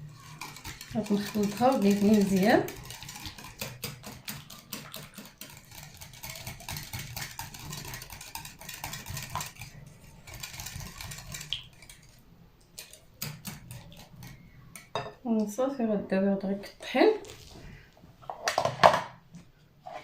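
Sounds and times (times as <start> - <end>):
batter being stirred in bowl: 0.0 - 15.6.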